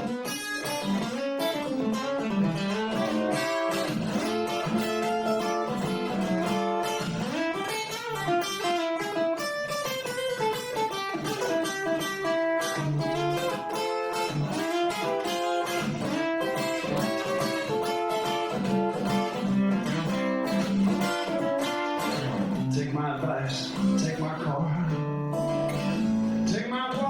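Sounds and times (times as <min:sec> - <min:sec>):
guitar picked notes: 0:00.0 - 0:27.0.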